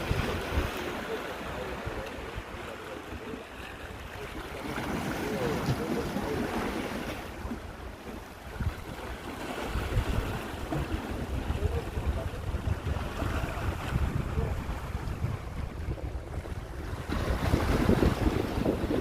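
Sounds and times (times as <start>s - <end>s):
wind buffeting microphone: 0.0s - 2.6s, 8.4s - 19.0s
sea waves breaking: 0.0s - 19.0s.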